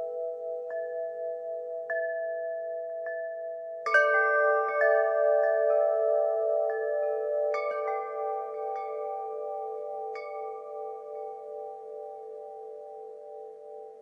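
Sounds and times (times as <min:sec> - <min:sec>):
wind chimes ringing: 0:00.0 - 0:14.0.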